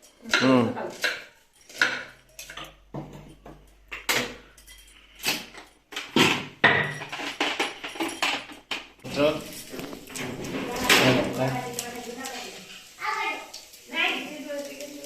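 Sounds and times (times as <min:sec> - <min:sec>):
utensils and dishes clattering: 0:00.0 - 0:13.0.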